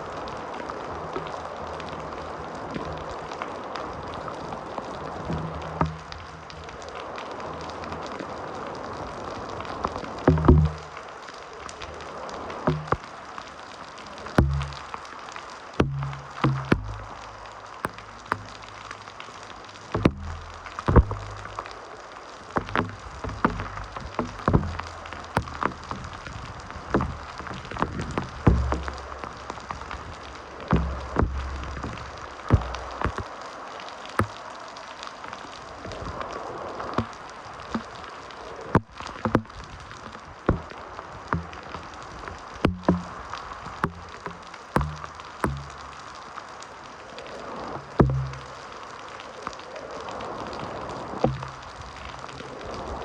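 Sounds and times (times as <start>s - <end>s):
heavy rain hissing: 0.0s - 53.0s
drips tapping a surface: 5.3s - 6.7s, 10.3s - 11.0s, 12.6s - 13.1s, 14.4s - 15.0s, 15.8s - 19.0s, 19.9s - 21.8s, 22.6s - 33.3s, 34.2s - 34.4s, 37.0s - 38.0s, 38.8s - 46.1s, 47.8s - 48.6s, 51.2s - 52.3s
large drops hitting hard surface: 10.3s - 10.9s, 14.4s - 14.9s, 22.6s - 26.4s, 27.0s - 30.1s, 30.7s - 33.3s, 42.7s - 46.0s
low rumble: 15.8s - 18.9s, 20.0s - 21.7s, 22.6s - 33.2s.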